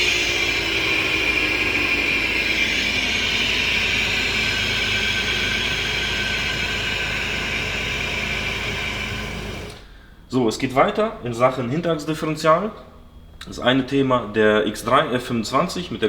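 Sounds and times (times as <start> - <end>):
steady road noise: 0.0 - 9.8
worn wheel bearing drone: 0.0 - 10.0
differential whine and drone: 0.0 - 16.0.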